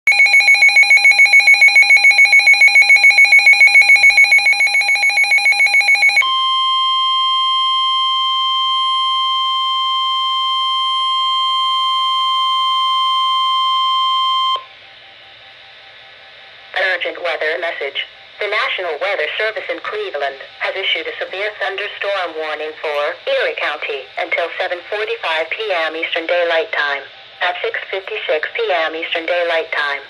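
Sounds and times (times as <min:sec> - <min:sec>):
rapidly pulsing electronic alarm: 0:00.1 - 0:19.5
steady warning alarm tone: 0:00.1 - 0:19.7
faint radio hiss: 0:14.7 - 0:30.0.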